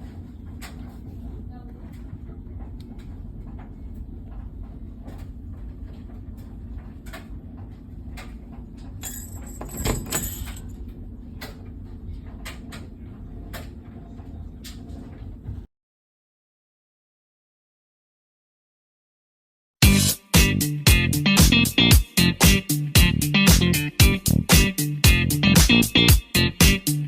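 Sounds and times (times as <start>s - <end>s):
small bells jingling: 9.0s - 10.7s
door opening: 9.1s - 10.7s.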